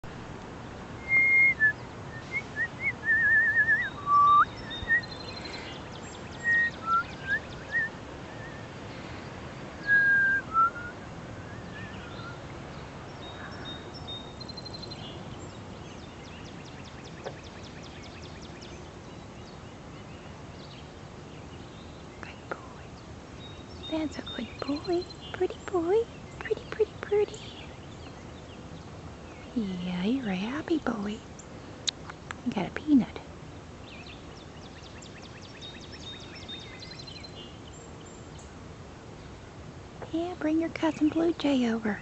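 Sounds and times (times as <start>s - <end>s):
birds chirping: 0.0s - 39.4s, 40.0s - 42.0s
person whistling: 1.0s - 4.5s, 9.9s - 10.9s.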